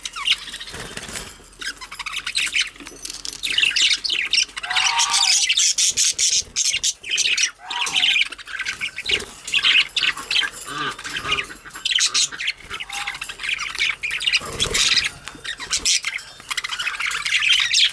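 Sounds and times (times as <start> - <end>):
budgerigars chattering and squawking: 0.0 - 17.9.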